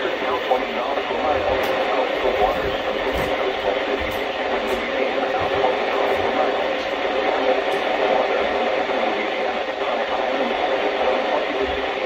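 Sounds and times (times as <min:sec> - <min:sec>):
faint voice: 0:00.0 - 0:12.0
hissing radio noise: 0:00.0 - 0:12.0.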